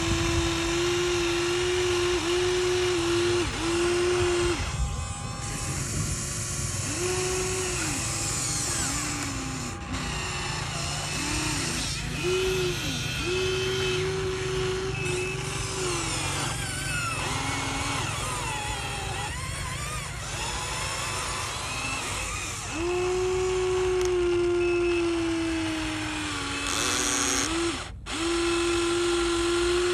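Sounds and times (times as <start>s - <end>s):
small electric motors whining: 0.0s - 29.9s.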